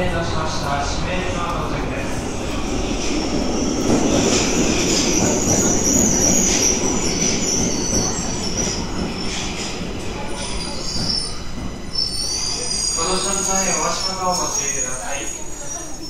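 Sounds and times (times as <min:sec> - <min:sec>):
subway train rumble: 0:00.0 - 0:16.0
wheels and brakes squealing: 0:04.9 - 0:16.0.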